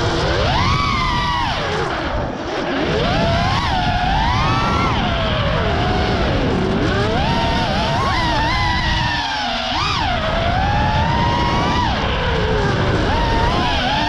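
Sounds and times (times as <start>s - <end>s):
quadcopter motors whining: 0.0s - 14.0s.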